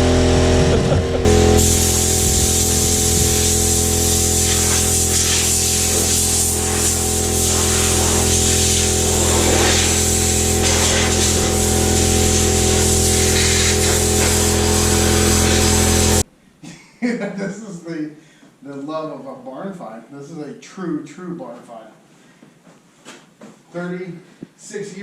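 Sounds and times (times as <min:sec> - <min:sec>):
power tool hum with air hiss: 0:00.0 - 0:16.2.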